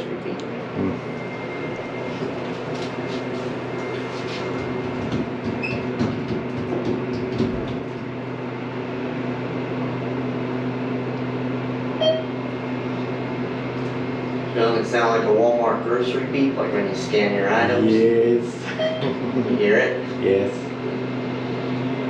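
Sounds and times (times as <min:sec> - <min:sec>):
elevator motor hum: 0:00.0 - 0:22.0
short electronic beep: 0:12.0 - 0:12.4, 0:18.8 - 0:19.2.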